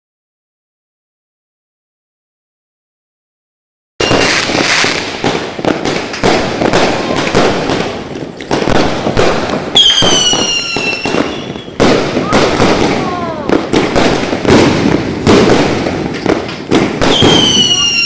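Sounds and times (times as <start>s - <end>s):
fireworks bangs and crackles: 4.0s - 18.0s
whistling firework: 4.0s - 18.0s.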